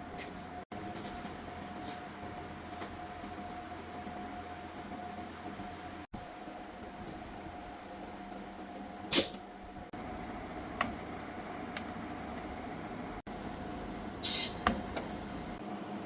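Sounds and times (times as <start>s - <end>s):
workshop hum: 0.0s - 15.7s
hissing bursts: 14.2s - 15.6s.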